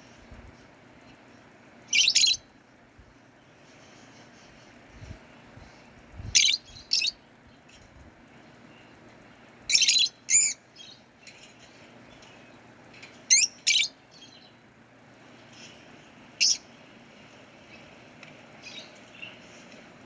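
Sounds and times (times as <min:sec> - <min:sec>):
faint bird twittering: 0:01.0 - 0:02.6, 0:03.2 - 0:18.0, 0:18.6 - 0:19.8
bird chirping high-pitched: 0:01.9 - 0:02.5, 0:06.2 - 0:07.2, 0:09.7 - 0:11.0, 0:13.3 - 0:14.6, 0:16.4 - 0:16.7.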